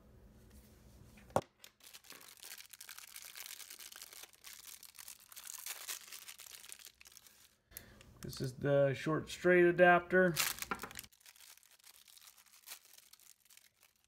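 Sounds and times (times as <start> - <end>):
packaging crinkled and torn: 1.4 - 8.3, 10.3 - 14.0.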